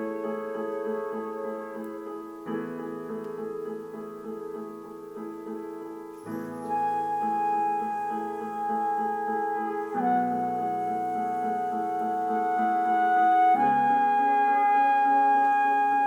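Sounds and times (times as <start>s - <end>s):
slow instrumental music: 0.0s - 16.0s.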